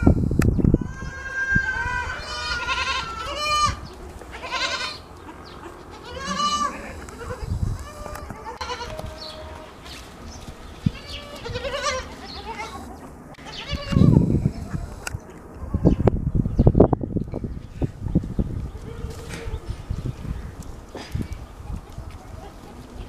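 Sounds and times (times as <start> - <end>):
goat kids bleating: 0.7 - 10.0, 10.7 - 15.0.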